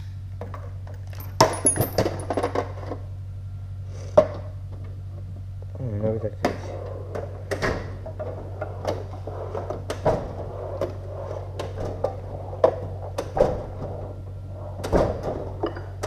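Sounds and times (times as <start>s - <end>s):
steady low hum: 0.0s - 16.0s
hand tools and metal parts clicking: 1.1s - 2.6s.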